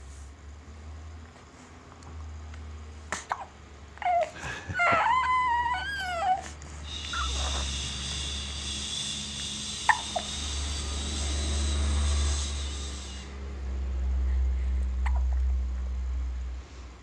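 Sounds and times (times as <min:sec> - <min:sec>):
steady hum with high whine: 0:00.0 - 0:17.0
baby whimpering: 0:03.1 - 0:07.8.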